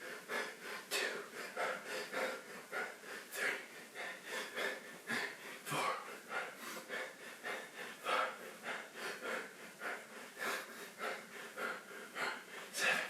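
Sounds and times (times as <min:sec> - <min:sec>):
man breathing hard: 0:00.0 - 0:13.0.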